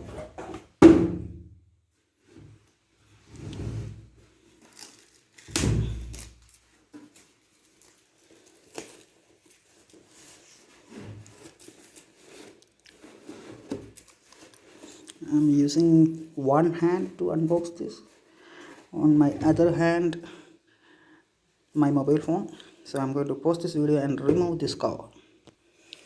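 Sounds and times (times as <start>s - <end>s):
packaging crinkling and rustling: 4.2s - 19.8s.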